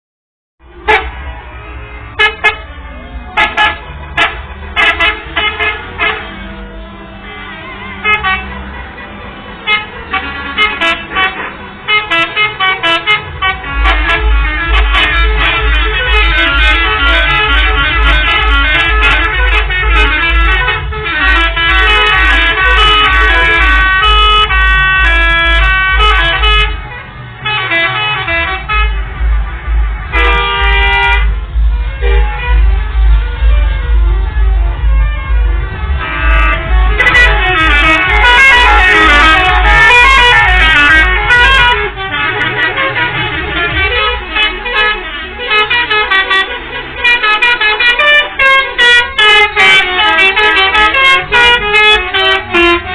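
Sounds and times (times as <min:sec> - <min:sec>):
low engine rumble: 0:00.6 - 0:52.9
musical air horn toots: 0:00.7 - 0:01.4, 0:02.0 - 0:02.7, 0:03.3 - 0:52.9
low rumble: 0:28.7 - 0:41.6.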